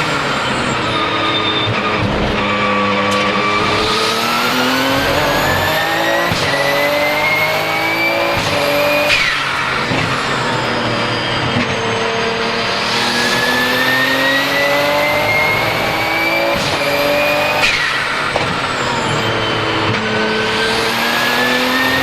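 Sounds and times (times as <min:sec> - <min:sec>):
turbo whistle: 0:00.0 - 0:12.4
car engine accelerating hard: 0:00.0 - 0:22.0.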